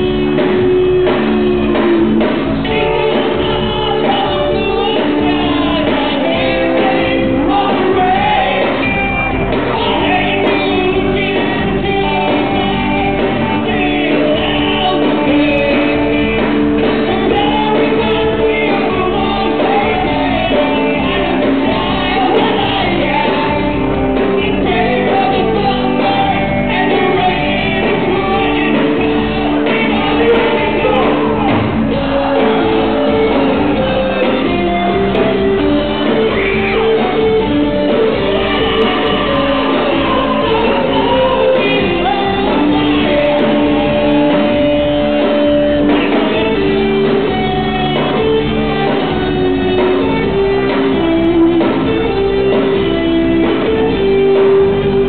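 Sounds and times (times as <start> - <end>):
live rock band playing: 0.0 - 55.0
shouted vocals: 28.2 - 34.8, 38.1 - 44.7.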